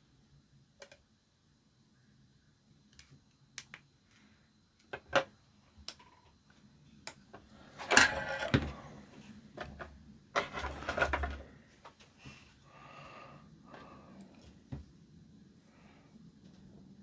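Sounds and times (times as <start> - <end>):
objects clicking and knocking: 9.6 - 11.4.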